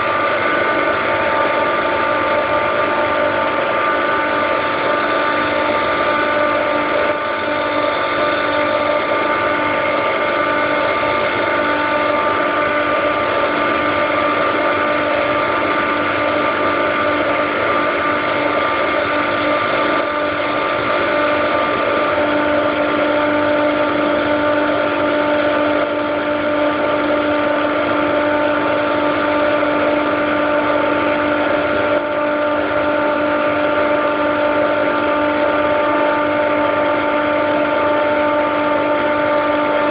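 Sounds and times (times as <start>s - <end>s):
chiller compressor humming: 0.0s - 39.9s.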